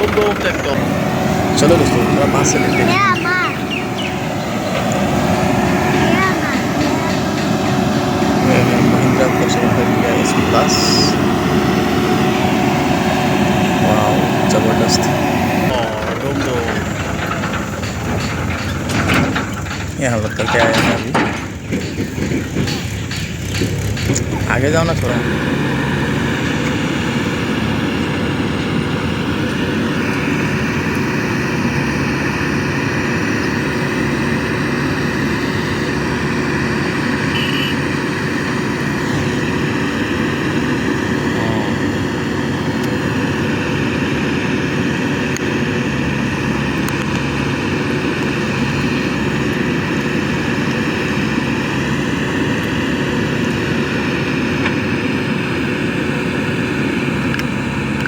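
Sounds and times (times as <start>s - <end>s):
diesel engines running: 0.0s - 58.0s
steady high whine: 0.0s - 58.0s.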